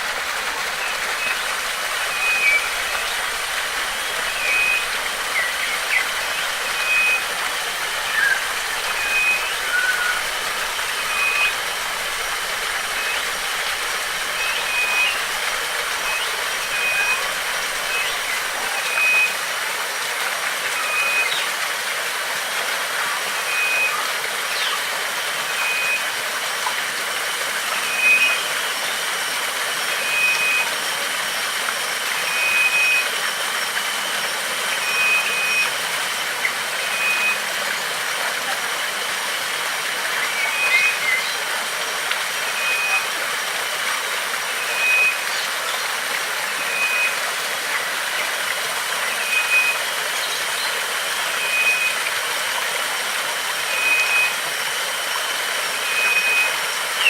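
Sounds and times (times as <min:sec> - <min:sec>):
waterfall rushing: 0:00.0 - 0:57.0
faint bird chirps: 0:00.8 - 0:11.7.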